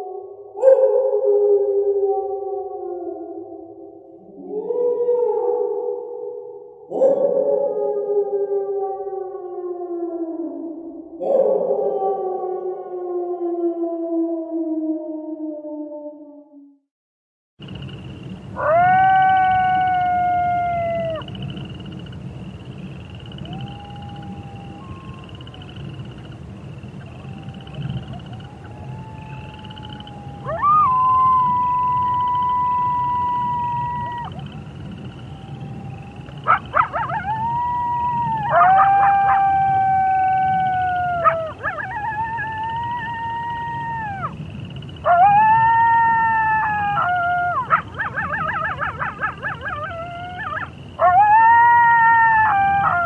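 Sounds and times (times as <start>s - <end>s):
wolves howling: 4.3s - 6.3s, 18.6s - 21.9s, 23.0s - 26.3s, 27.0s - 53.0s
wolves yipping: 27.0s - 39.7s, 40.4s - 43.2s, 46.1s - 53.0s.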